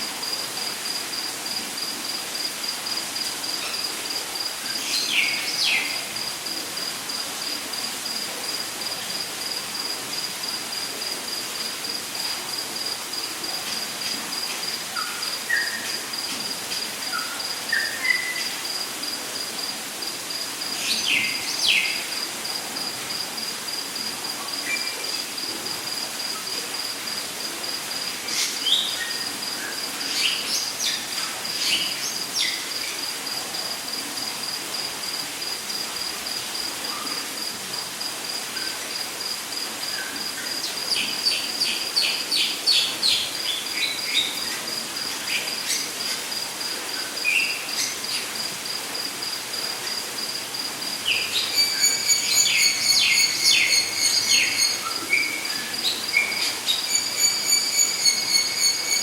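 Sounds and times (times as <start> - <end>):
steady hiss: 0.0 - 59.0
insect trilling: 51.1 - 59.0
bird chirps and whistles: 51.6 - 55.0, 56.4 - 59.0.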